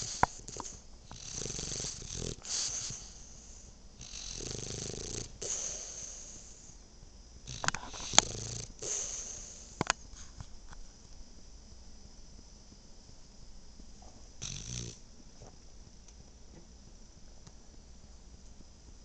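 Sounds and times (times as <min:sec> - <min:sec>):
dog snoring: 0:00.0 - 0:06.8, 0:07.4 - 0:09.9, 0:14.0 - 0:15.0.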